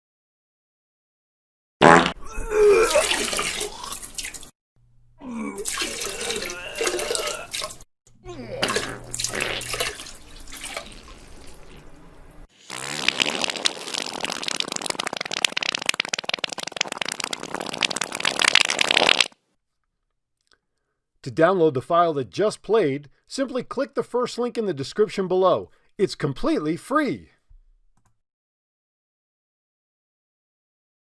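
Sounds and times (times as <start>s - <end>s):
wet spluttering gurgling: 1.8s - 4.5s, 5.2s - 19.4s.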